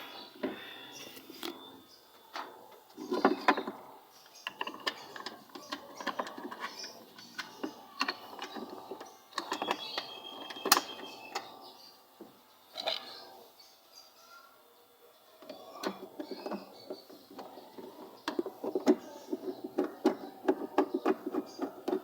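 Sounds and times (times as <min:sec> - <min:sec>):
clicks and knocks on machine parts: 0:04.4 - 0:11.5, 0:15.4 - 0:22.0.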